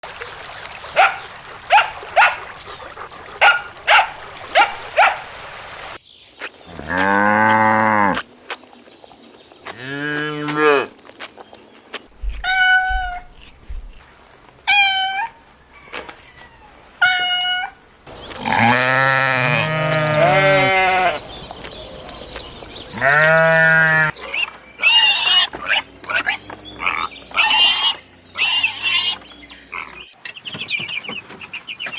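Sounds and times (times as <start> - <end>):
farm animals bleating: 6.7 - 8.2, 18.4 - 21.3, 22.9 - 30.0.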